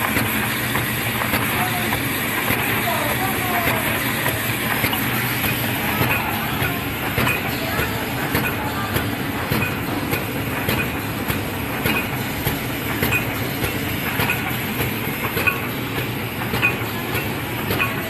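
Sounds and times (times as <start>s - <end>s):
wrapping machine clattering: 0.0s - 18.0s.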